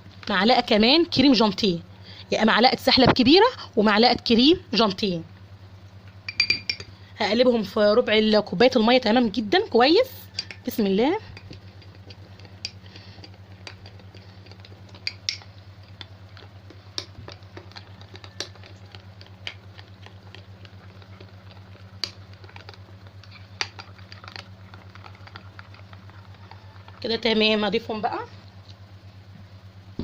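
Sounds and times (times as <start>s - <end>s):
low steady hum: 0.0s - 30.0s
spoon clinking against cup: 6.3s - 6.9s.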